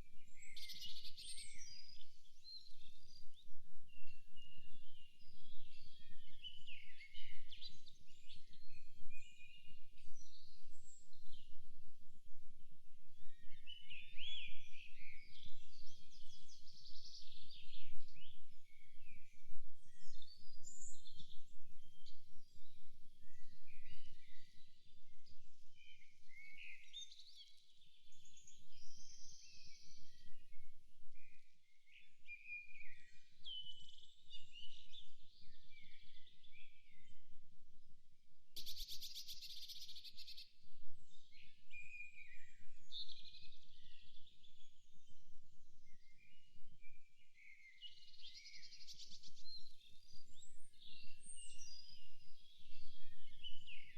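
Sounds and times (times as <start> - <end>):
songbirds chirping and singing: 38.6 - 53.9.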